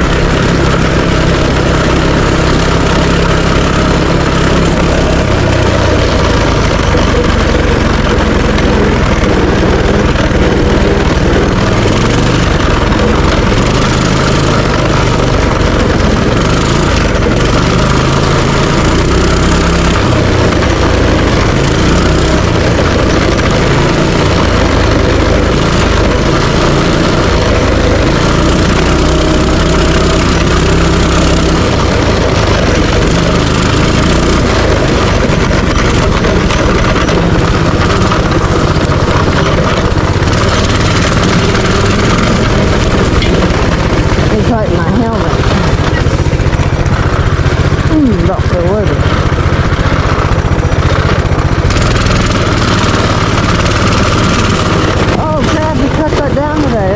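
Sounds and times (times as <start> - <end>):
minibike engine running: 0.0 - 56.9.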